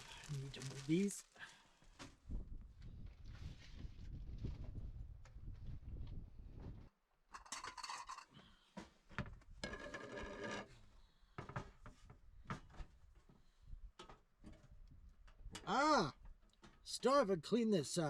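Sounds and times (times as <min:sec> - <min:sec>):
rattling scrape: 0:09.6 - 0:10.8.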